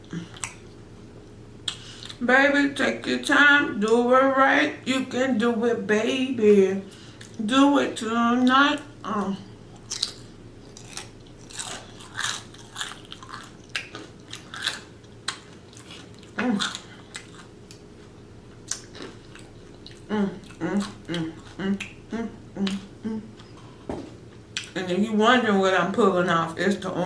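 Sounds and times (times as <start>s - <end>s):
person chewing food: 0.0s - 0.8s, 1.6s - 2.2s, 9.6s - 24.8s
person humming: 20.1s - 23.5s.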